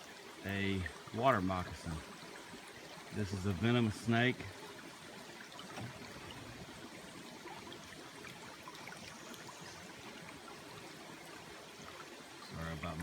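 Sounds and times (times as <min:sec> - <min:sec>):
creek water flowing: 0:00.0 - 0:13.0.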